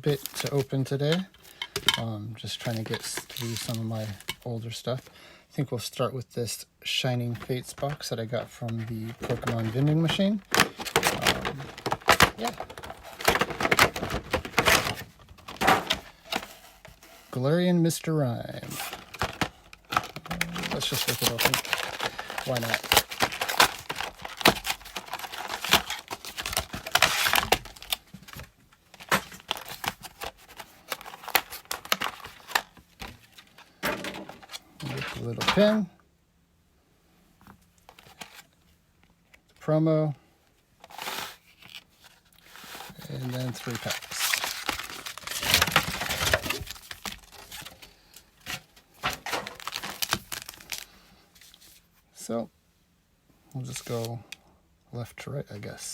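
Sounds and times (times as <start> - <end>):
packaging tearing and crinkling: 2.6 - 4.3, 9.1 - 16.6, 18.6 - 33.5, 40.9 - 50.9.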